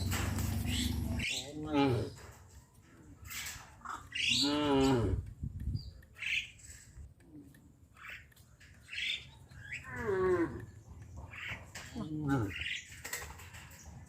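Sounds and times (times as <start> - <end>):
bird chirps: 7.9 - 13.0
cow mooing: 9.8 - 10.7.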